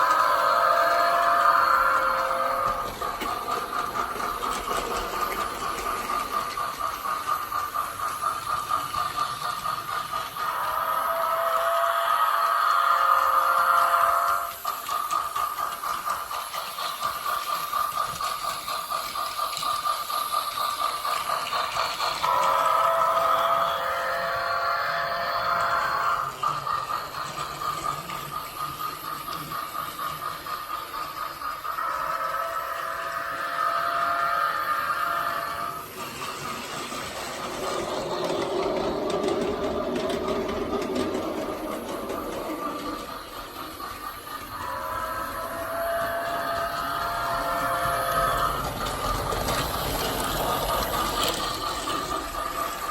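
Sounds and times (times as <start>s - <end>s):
toy train chuffing effect: 0.0s - 52.9s.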